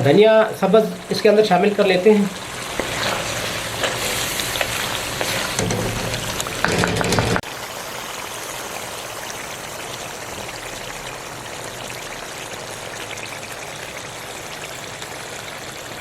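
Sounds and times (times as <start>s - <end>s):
gravy sizzling: 0.0s - 16.0s
stirring in a pan: 0.6s - 7.5s.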